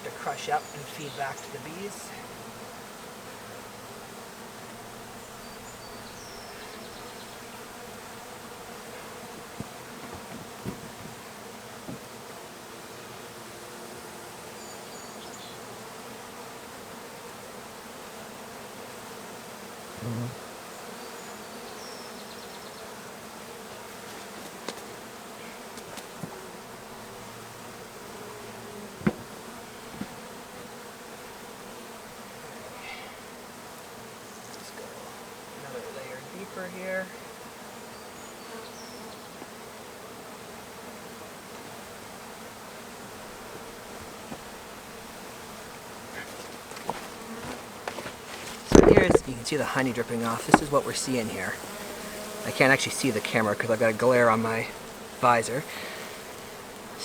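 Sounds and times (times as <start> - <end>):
honey bees buzzing: 0.0 - 57.0
small knocks and clicks: 46.4 - 49.4.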